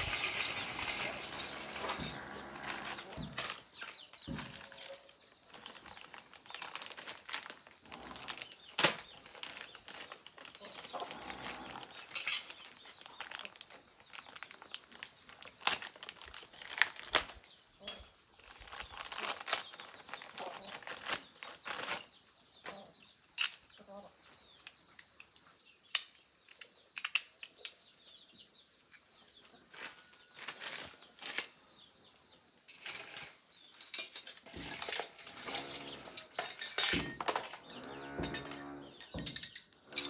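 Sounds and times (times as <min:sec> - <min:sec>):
hand tools clinking: 0:00.0 - 0:05.0, 0:11.1 - 0:12.8, 0:17.8 - 0:18.2, 0:32.7 - 0:40.0
high metallic ring: 0:37.0 - 0:40.0.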